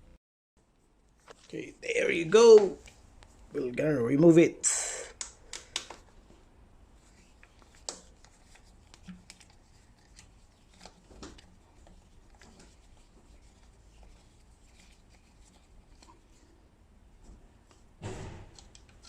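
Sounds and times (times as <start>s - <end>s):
faint clicks and scrapes: 7.0s - 16.6s.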